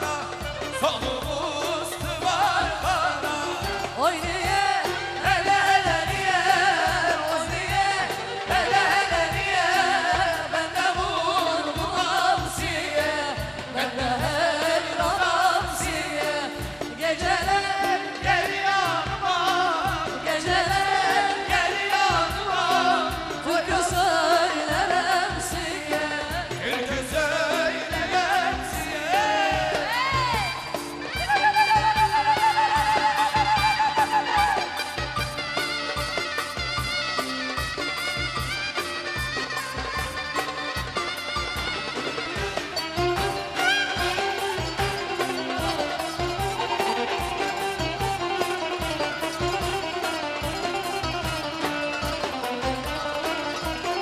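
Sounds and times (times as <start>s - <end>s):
person singing ornamented melody: 0.0s - 38.0s
band accompaniment with steady beat: 0.0s - 54.0s.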